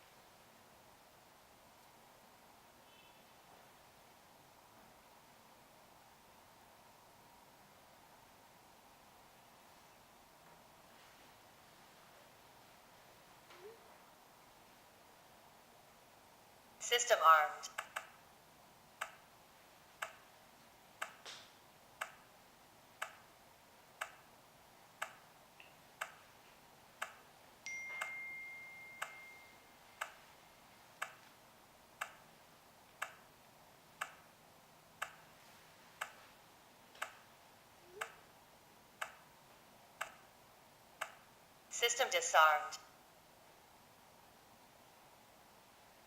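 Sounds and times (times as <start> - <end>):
quiet ticks: 19.0 - 19.3, 20.0 - 20.3, 21.0 - 21.3, 22.0 - 22.3, 23.0 - 23.3, 24.0 - 24.3, 25.0 - 26.3, 27.0 - 27.2, 30.0 - 30.2, 31.0 - 31.3, 32.0 - 32.3, 32.9 - 33.3, 34.0 - 34.3, 35.0 - 35.3, 36.0 - 36.3, 36.9 - 37.3, 38.0 - 38.3, 39.0 - 39.3, 40.0 - 40.3, 41.0 - 41.3
steady high beep: 27.7 - 29.7.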